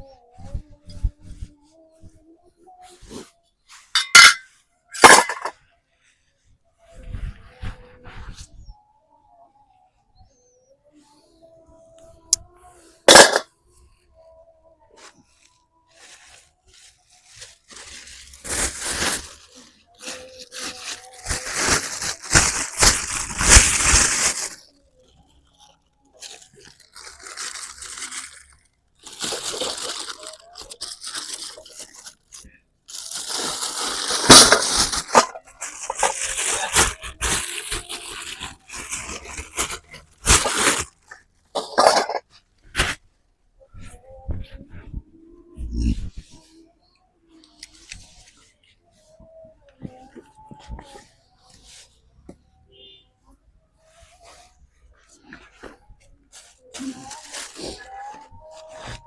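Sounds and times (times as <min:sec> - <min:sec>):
crunching and rustling: 0:15.0 - 0:43.0, 0:54.2 - 0:59.0.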